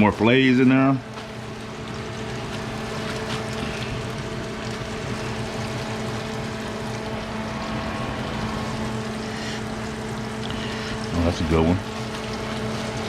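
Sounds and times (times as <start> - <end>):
fish frying in grease: 0.0 - 13.0
low hum: 1.2 - 11.1.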